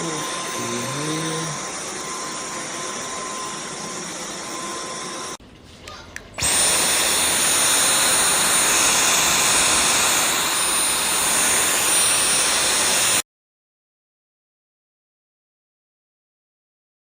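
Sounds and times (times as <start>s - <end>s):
vacuum cleaner whine: 0.0s - 5.4s, 6.4s - 13.2s.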